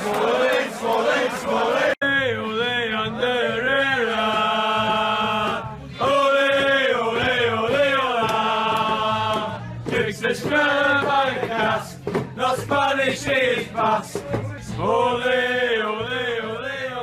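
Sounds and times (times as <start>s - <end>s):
stadium crowd chanting: 0.0s - 17.0s.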